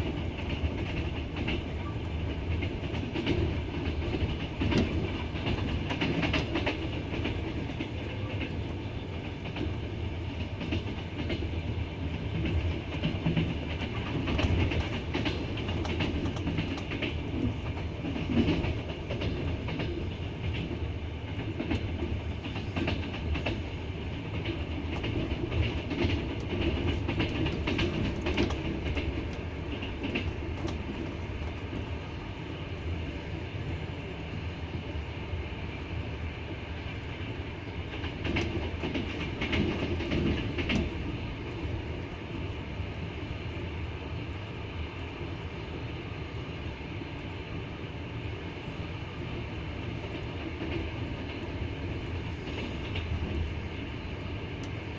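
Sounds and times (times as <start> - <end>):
train wheels clattering over rail joints: 0.0 - 32.2, 37.8 - 41.9, 49.8 - 54.9
train rumbling: 0.0 - 54.9.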